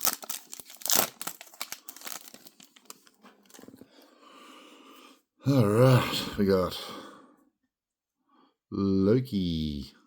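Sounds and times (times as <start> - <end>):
wrapper crinkling and tearing: 0.0 - 3.7.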